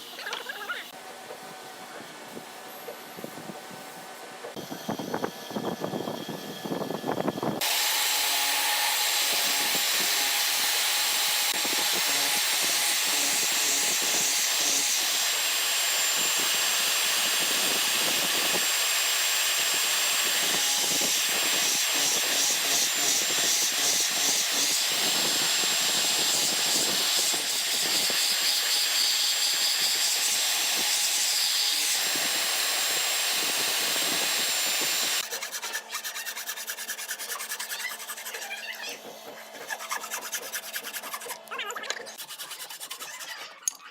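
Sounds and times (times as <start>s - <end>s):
power tool motor whine: 4.5s - 35.2s.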